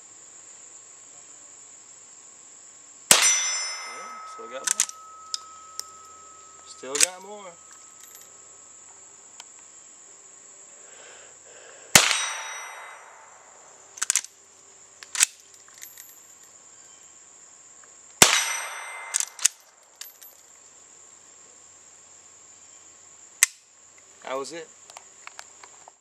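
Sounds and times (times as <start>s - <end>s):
gunshots with ringing tail: 3.1s - 7.9s, 11.9s - 13.5s, 18.2s - 19.5s
metallic lever clicks: 4.6s - 5.9s, 6.9s - 8.2s, 14.0s - 14.3s, 19.1s - 20.3s.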